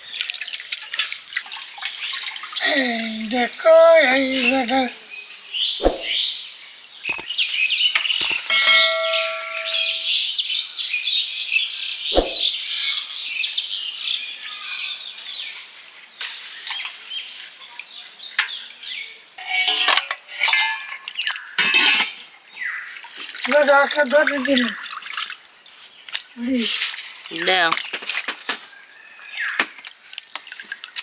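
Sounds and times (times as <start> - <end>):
small birds chirping: 2.0 - 19.4, 22.3 - 30.8
pots or utensils knocking: 8.2 - 10.1, 19.4 - 20.9.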